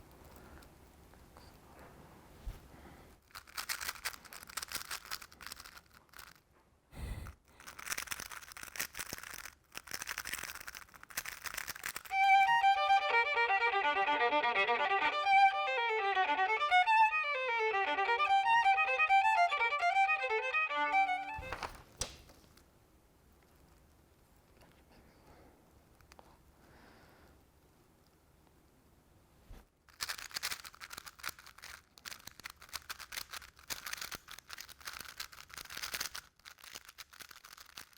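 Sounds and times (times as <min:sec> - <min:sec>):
speed cube clicking and rattling: 0:03.2 - 0:06.4, 0:07.4 - 0:21.4, 0:29.9 - 0:37.9
solo violin melody: 0:12.1 - 0:21.8.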